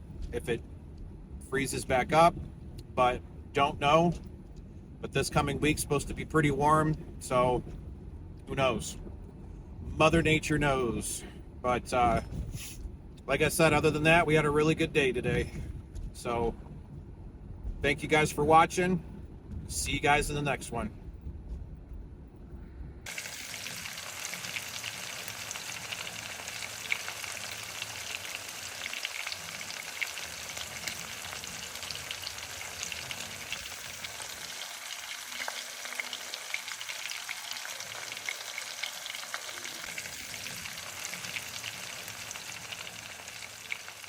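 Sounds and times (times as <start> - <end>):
crackling sizzling hiss: 23.0 - 44.0.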